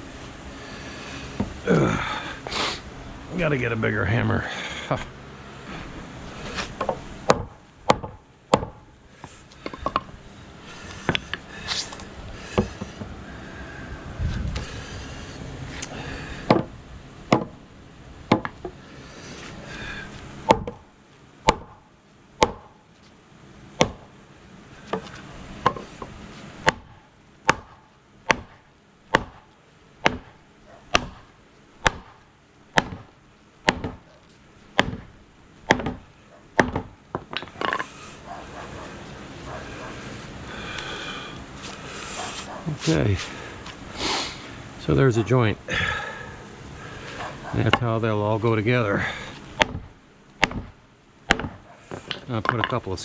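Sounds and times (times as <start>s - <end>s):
hammer striking wooden posts: 6.8s - 8.9s, 16.4s - 17.6s, 18.3s - 18.8s, 20.4s - 22.8s, 23.8s - 24.2s, 24.9s - 34.1s, 34.7s - 37.9s, 49.2s - 52.8s.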